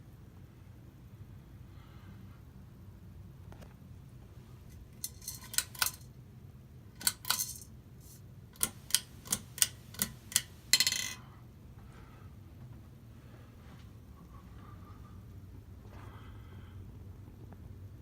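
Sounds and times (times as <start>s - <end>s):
faint steady hum: 0.0s - 18.0s
metallic clicks and rattles on fan: 4.8s - 6.1s, 7.0s - 11.2s.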